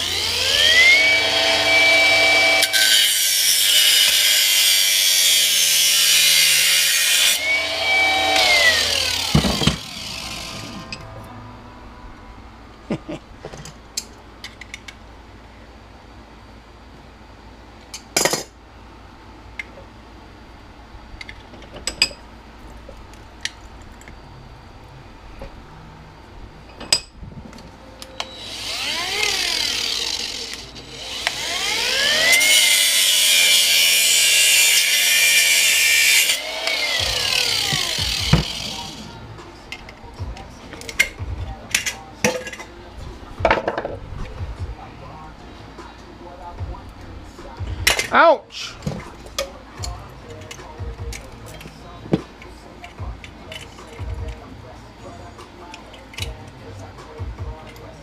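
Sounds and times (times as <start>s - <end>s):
angle grinder grinding metal: 0.0s - 11.3s, 28.2s - 39.2s
clicks and knocks of parts handled: 40.7s - 42.7s, 48.8s - 54.4s.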